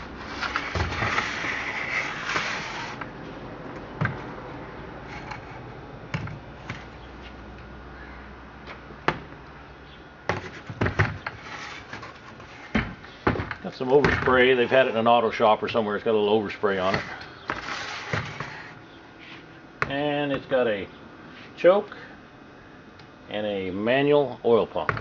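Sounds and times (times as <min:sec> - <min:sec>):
chainsaw scraping on bench: 0:00.0 - 0:03.1, 0:05.0 - 0:05.8, 0:11.3 - 0:12.8, 0:13.7 - 0:15.2, 0:16.7 - 0:18.8.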